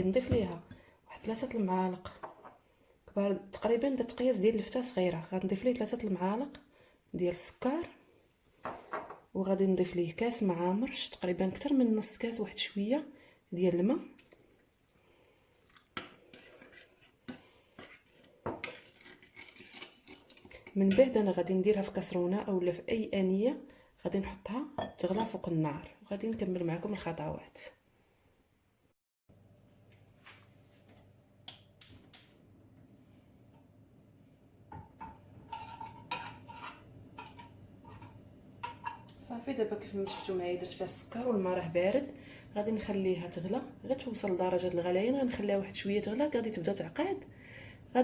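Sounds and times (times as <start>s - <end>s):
water pouring into bowl: 14.2s - 16.0s
dishes and utensils clinking: 34.7s - 39.2s.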